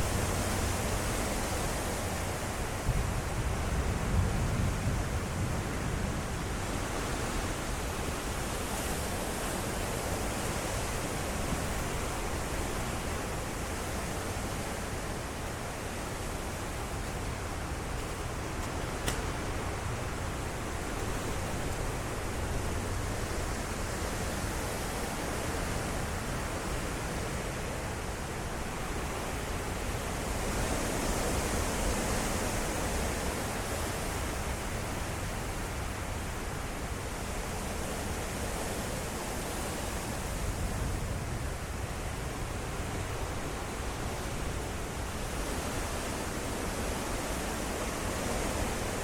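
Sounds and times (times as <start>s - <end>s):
strong wind blowing: 0.0s - 7.4s.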